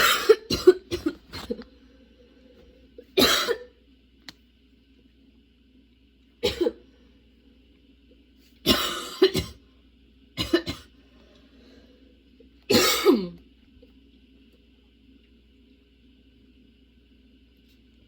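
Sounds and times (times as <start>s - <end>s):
woman coughing: 0.0s - 1.6s, 3.2s - 3.8s, 6.4s - 6.8s, 8.7s - 9.6s, 10.4s - 10.9s, 12.7s - 13.4s.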